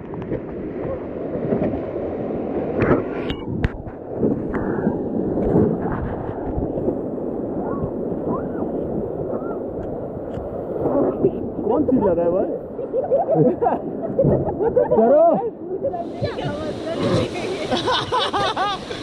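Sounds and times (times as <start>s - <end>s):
splashes and knocks: 0.0s - 2.0s
wind buffeting microphone: 0.0s - 19.0s
rushing whitewater: 14.9s - 19.0s.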